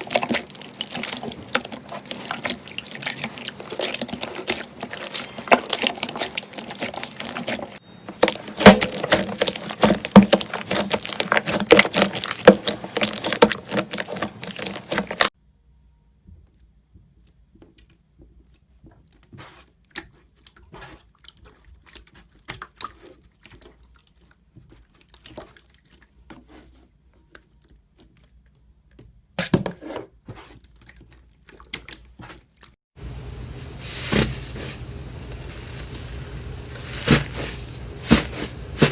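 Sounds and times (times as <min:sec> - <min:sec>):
slime squished by hand: 0:00.0 - 0:15.3, 0:33.1 - 0:38.9.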